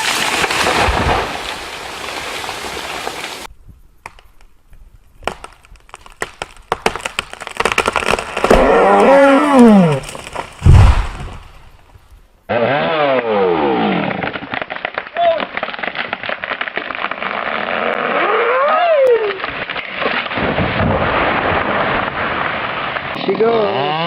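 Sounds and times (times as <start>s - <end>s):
tree wood cracking in snaps: 4.0s - 4.5s, 5.2s - 11.5s.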